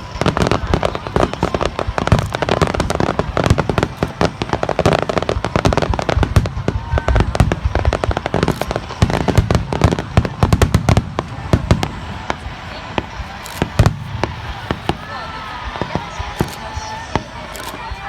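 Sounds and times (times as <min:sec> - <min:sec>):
fireworks booming and crackling: 0:00.0 - 0:18.0.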